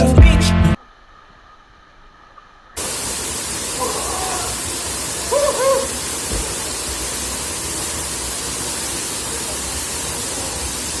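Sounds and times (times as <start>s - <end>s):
waterfall rushing: 2.8s - 11.0s.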